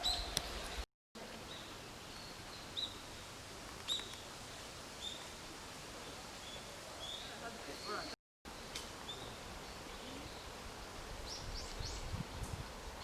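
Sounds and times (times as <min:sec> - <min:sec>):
faint steady outdoor hiss: 0:00.0 - 0:13.0
small birds chirping: 0:06.0 - 0:12.2.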